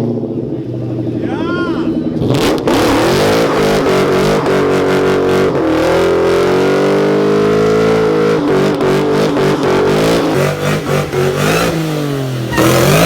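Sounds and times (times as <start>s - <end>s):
car engine revving hard: 1.9s - 13.0s.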